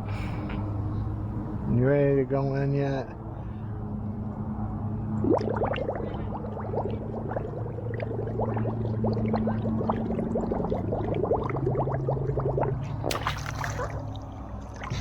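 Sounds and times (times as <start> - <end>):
steady low hum: 3.0 - 15.0
water dripping into pool: 5.2 - 15.0
water splash: 5.2 - 15.0.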